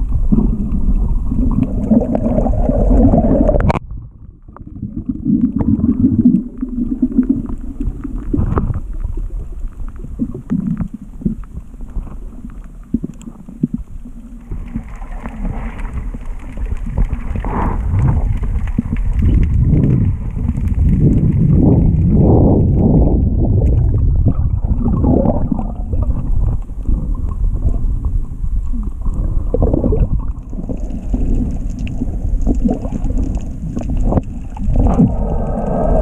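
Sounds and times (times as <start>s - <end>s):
muffled underwater gurgling: 0.0s - 36.0s.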